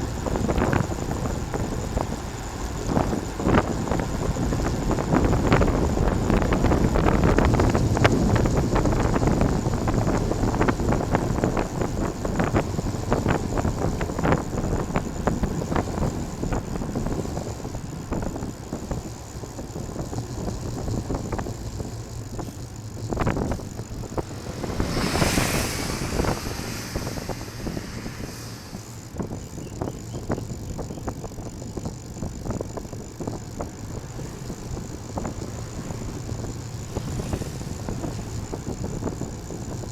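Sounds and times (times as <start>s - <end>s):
wind buffeting microphone: 0.0s - 39.9s
rushing swoosh: 23.2s - 29.6s.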